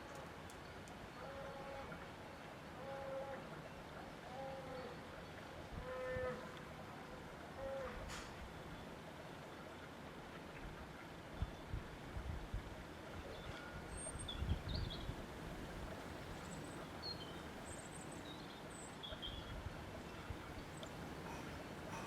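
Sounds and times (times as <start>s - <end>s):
wind blowing in gusts: 11.4s - 16.4s.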